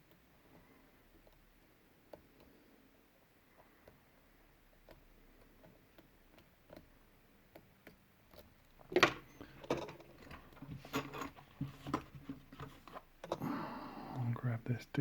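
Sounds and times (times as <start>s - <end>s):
clatter of tools and lock: 8.9s - 12.1s.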